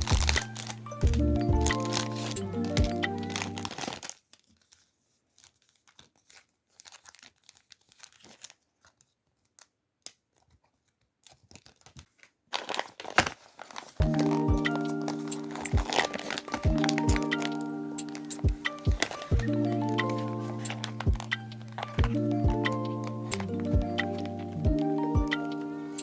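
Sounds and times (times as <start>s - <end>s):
background music: 0.0s - 3.8s, 14.0s - 26.0s
packaging tearing and crinkling: 0.0s - 26.0s.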